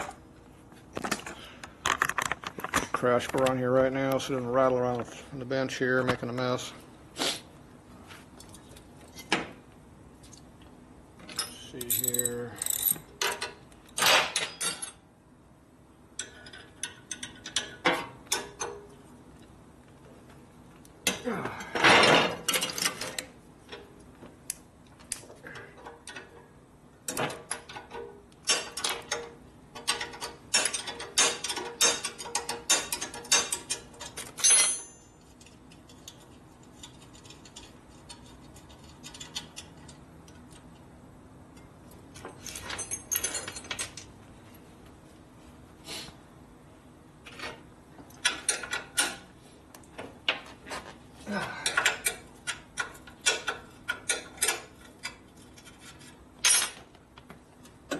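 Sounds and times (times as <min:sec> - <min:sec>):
metal bolts clinking: 0:11.2 - 0:15.0
ratchet-like clicks: 0:11.8 - 0:13.0.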